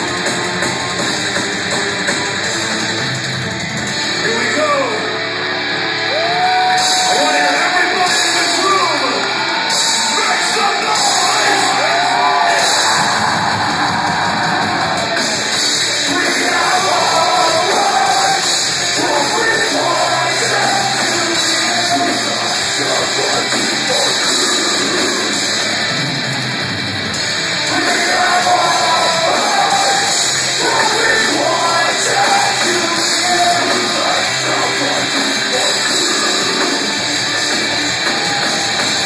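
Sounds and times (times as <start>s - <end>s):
distorted guitars: 0.0s - 39.0s
drums: 0.0s - 39.0s
person singing: 16.0s - 25.1s, 27.7s - 36.8s.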